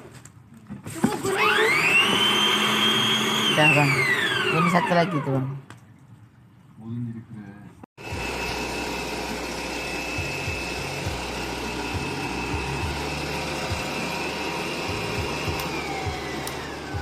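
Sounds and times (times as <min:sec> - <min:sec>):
stand mixer motor whine: 0:01.4 - 0:05.2, 0:08.0 - 0:17.0.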